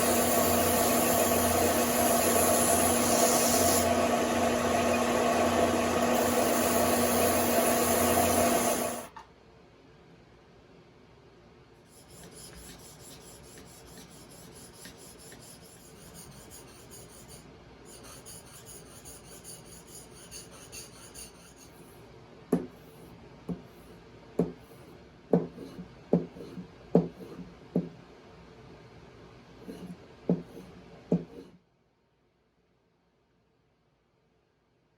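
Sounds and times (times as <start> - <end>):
rasp scraping: 0.0 - 9.0.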